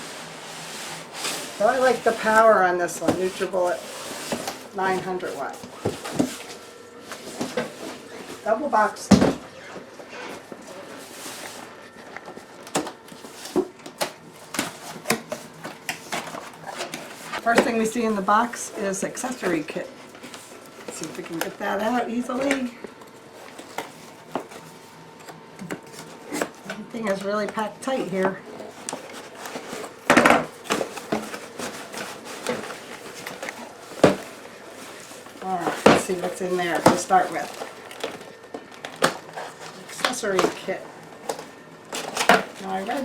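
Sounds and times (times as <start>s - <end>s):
cardboard scraping and rubbing: 0.0s - 8.6s, 28.6s - 30.0s, 30.6s - 37.9s
packing rustling: 28.6s - 43.0s.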